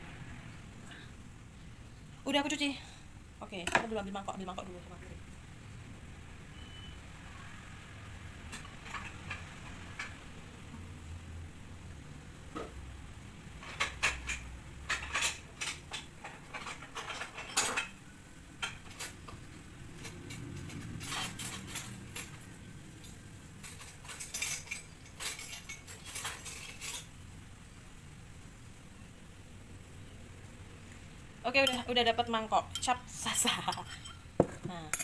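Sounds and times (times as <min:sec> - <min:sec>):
dishes and cutlery clattering: 0:08.5 - 0:10.2, 0:13.6 - 0:18.0, 0:18.6 - 0:27.1, 0:32.8 - 0:35.0.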